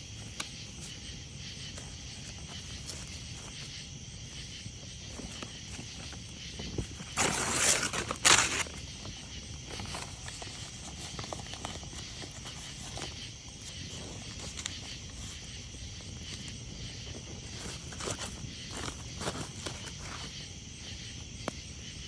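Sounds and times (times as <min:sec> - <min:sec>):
insects chirping: 0:00.0 - 0:22.0
loud rustling: 0:05.1 - 0:20.3.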